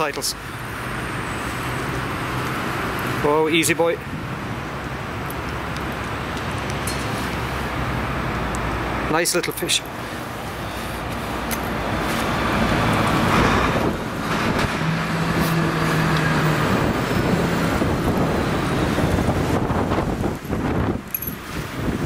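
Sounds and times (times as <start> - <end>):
road traffic: 0.0 - 22.0
wind on microphone: 4.0 - 7.8, 10.3 - 22.0
low engine hum: 9.9 - 22.0.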